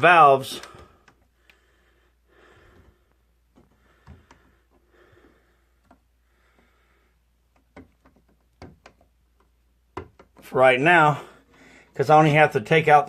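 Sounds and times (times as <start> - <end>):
faint clicks and knocks: 0.6 - 1.6, 2.6 - 10.5.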